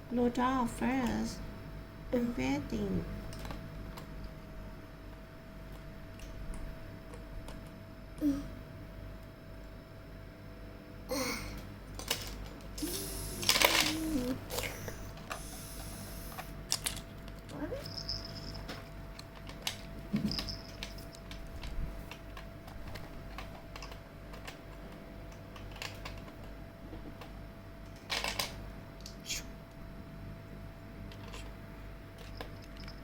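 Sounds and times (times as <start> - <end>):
faint electrical hum: 0.0 - 33.0
plastic blocks clicking: 13.3 - 14.7.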